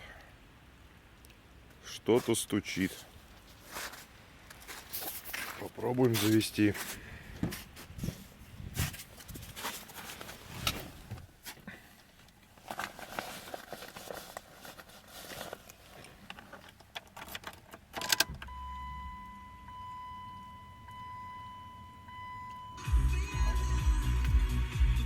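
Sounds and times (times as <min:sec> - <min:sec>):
car engine cranking and starting: 0:22.2 - 0:25.0.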